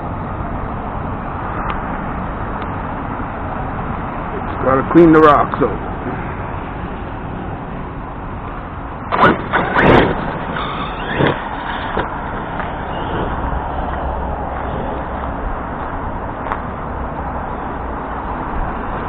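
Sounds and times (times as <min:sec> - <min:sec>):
rc truck motor and tyres: 0:00.0 - 0:19.0
steady outdoor hiss: 0:00.0 - 0:19.0.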